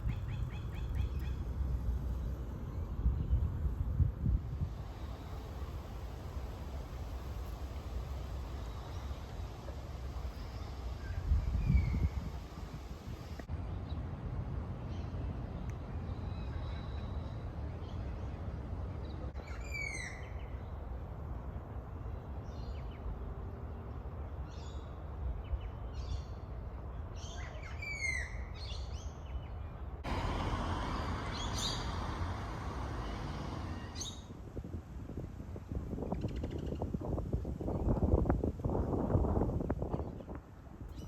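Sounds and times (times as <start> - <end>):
wind rumble on microphone: 0.0 - 23.2, 24.5 - 41.0
birds chirping: 30.2 - 34.3.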